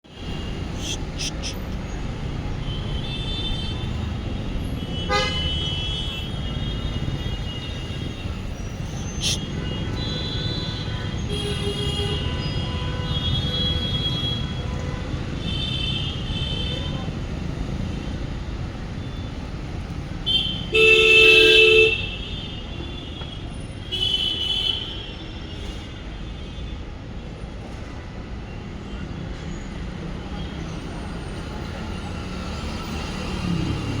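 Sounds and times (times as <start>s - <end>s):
traffic rumble: 0.0s - 20.8s, 29.9s - 34.0s
vehicle horn honking: 5.0s - 6.3s.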